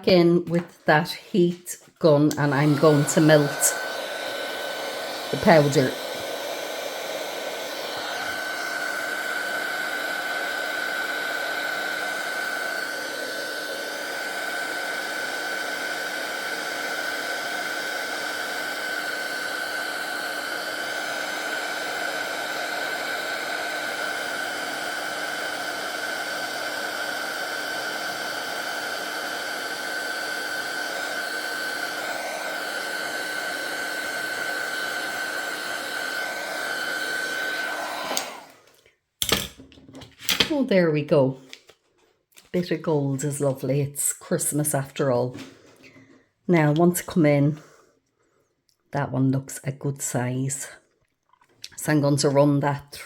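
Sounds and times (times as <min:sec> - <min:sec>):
heat gun blowing: 0:00.5 - 0:39.4.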